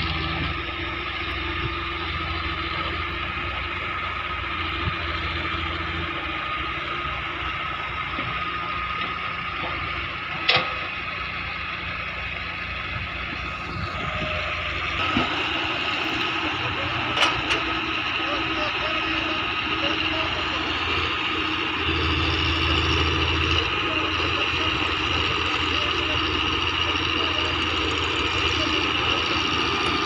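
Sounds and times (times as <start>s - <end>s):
diesel engine running with whine: 0.0s - 30.0s.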